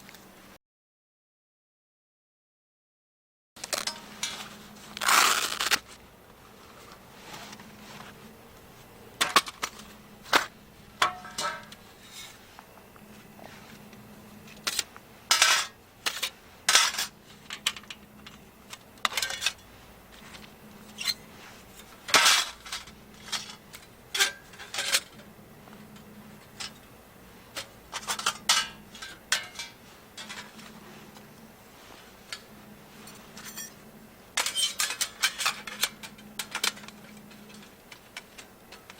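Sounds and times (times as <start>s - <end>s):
faint steady hum: 3.6s - 38.9s
metal cookware clinking and clattering: 11.0s - 11.8s, 19.1s - 19.6s, 22.1s - 25.2s, 27.6s - 30.6s, 33.4s - 33.8s, 34.4s - 36.9s.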